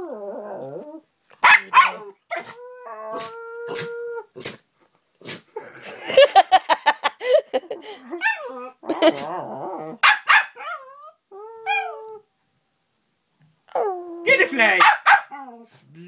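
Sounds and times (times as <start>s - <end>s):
dog barking and howling: 1.4s - 4.3s, 9.8s - 12.2s, 13.7s - 15.7s.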